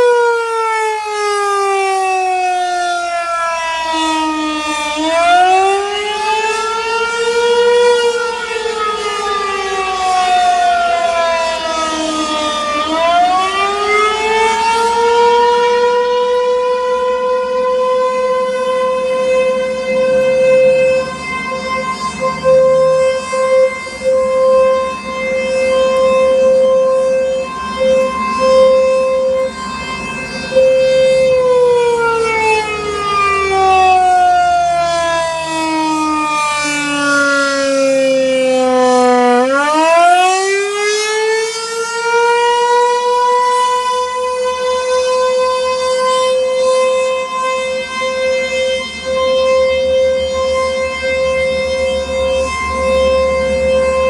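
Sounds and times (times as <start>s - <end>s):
rotating warning siren: 0.0s - 54.0s.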